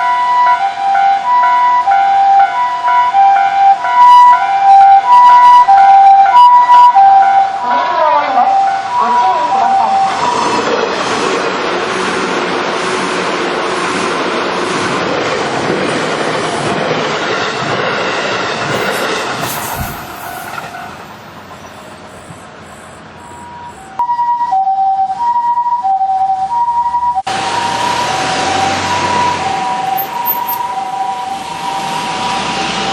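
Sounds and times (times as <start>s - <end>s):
two-tone ambulance siren: 0.0s - 10.7s, 18.6s - 32.9s
road noise: 10.1s - 24.0s, 27.3s - 32.9s
train rumbling past: 10.3s - 24.0s.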